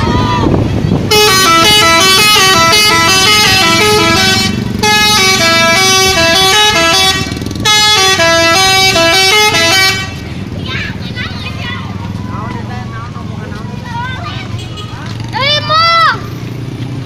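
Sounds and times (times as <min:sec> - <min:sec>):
musical bus air horn melody: 0:01.1 - 0:10.2.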